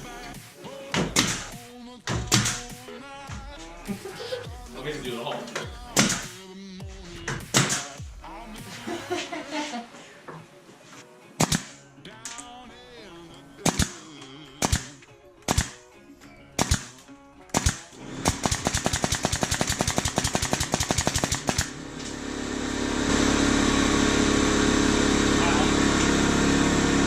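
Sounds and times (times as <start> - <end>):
rapid-fire bangs: 5.8 - 6.4, 13.6 - 15.8, 16.6 - 21.8
gunshots: 5.9 - 6.4, 7.4 - 8.0, 11.4 - 11.8, 13.6 - 15.8, 16.6 - 21.8
steady machine noise: 18.0 - 27.0.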